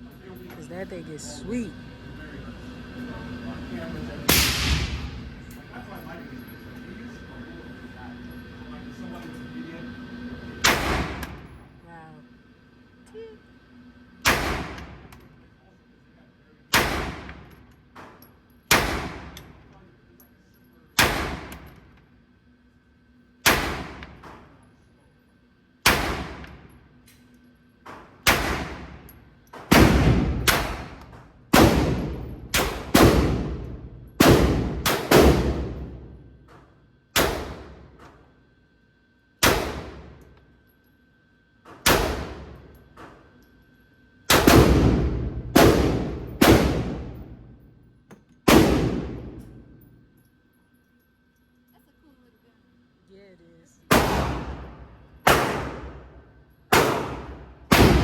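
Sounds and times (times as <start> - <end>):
pistol shots echoing indoors: 4.3 - 5.6, 14.2 - 15.2, 16.7 - 17.5, 18.6 - 19.6, 21.0 - 21.8, 23.4 - 24.4, 25.8 - 26.7, 28.2 - 36.2, 37.1 - 38.1, 39.4 - 40.4, 41.7 - 43.5, 44.2 - 47.6, 48.3 - 50.3, 53.9 - 58.0.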